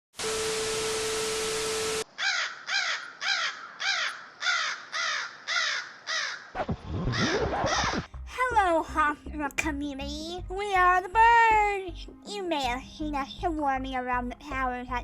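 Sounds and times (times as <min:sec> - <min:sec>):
crows cawing: 0:02.1 - 0:08.0.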